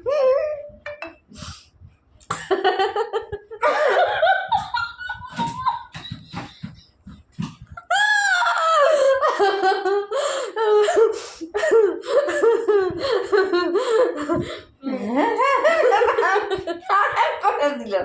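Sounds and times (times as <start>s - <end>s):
high-pitched laughter: 3.0s - 6.5s.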